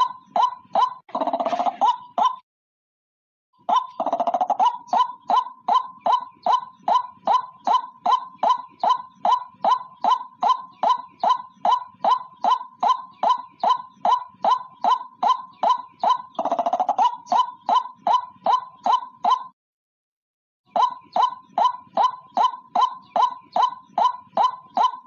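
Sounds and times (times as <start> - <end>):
rattling bird call burst: 1.1 - 2.0
waterhen calling: 20.7 - 25.0.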